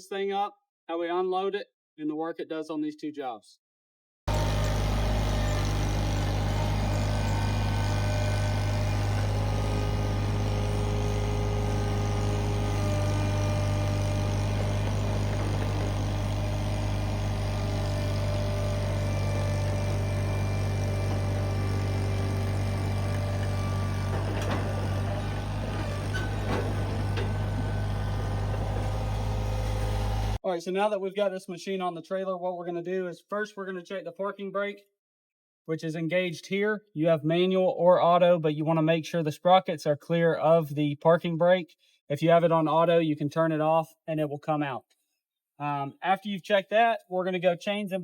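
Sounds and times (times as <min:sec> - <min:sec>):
engine running with low hum: 0:04.3 - 0:30.4
faint clanks: 0:24.1 - 0:28.0.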